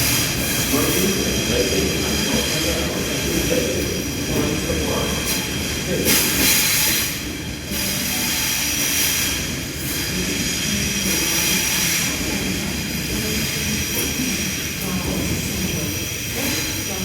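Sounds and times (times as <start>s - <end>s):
electric train rumbling: 0.0s - 17.0s.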